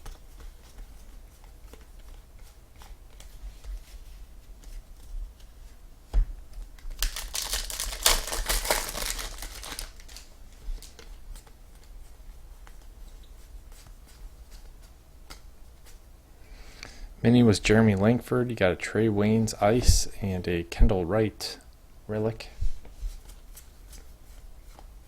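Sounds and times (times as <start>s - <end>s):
card pack wrapper crinkling: 6.9s - 11.5s.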